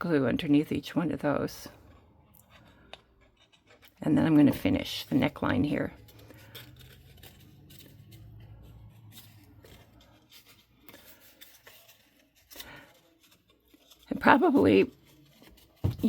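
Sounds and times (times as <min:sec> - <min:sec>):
cardstock rustling and tapping: 0:02.8 - 0:16.0.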